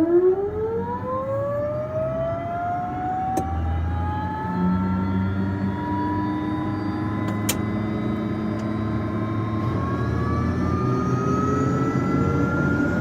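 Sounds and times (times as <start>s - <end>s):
plane engine whine spooling up: 0.0s - 13.0s.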